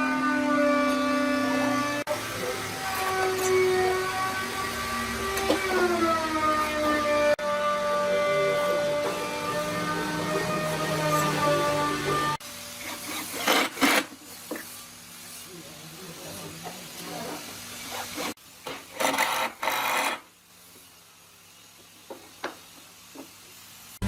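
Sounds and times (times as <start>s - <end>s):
hand tool scraping wood: 12.8s - 14.2s, 18.0s - 20.2s.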